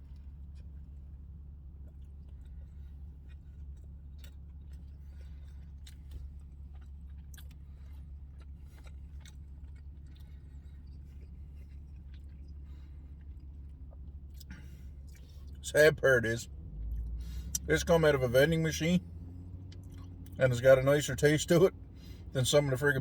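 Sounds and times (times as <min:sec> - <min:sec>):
person chewing pizza: 0:00.0 - 0:15.6
steady low hum: 0:00.0 - 0:23.0.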